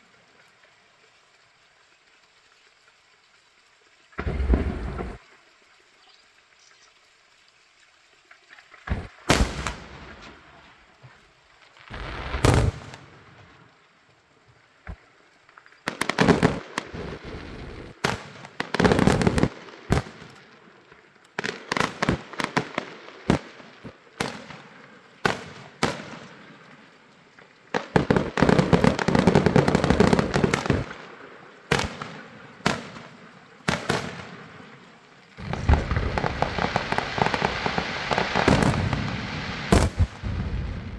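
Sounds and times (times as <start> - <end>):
fireworks bangs with crackling: 4.2 - 5.2, 8.8 - 14.0, 14.7 - 40.9.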